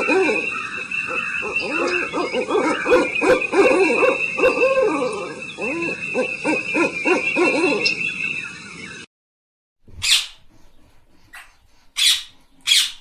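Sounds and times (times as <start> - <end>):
birds hooting: 0.0 - 9.1.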